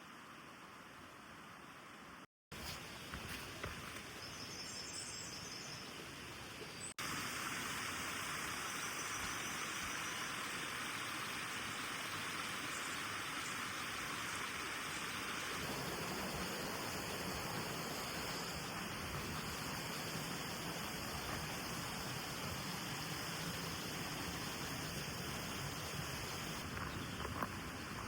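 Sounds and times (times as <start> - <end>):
stream water rushing: 7.0 - 28.0.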